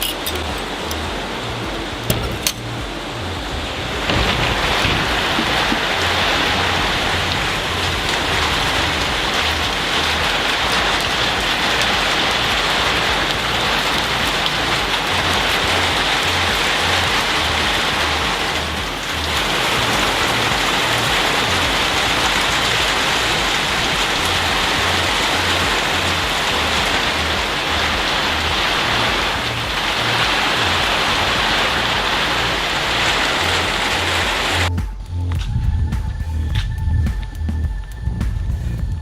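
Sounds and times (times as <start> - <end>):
deep pulsing bass line: 0.0 - 39.0
heavy rain falling: 0.0 - 39.0.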